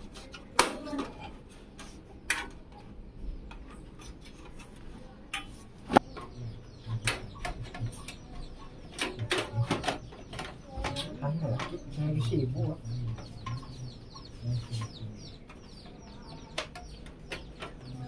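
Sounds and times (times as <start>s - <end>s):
chickens clucking: 0.0s - 18.0s.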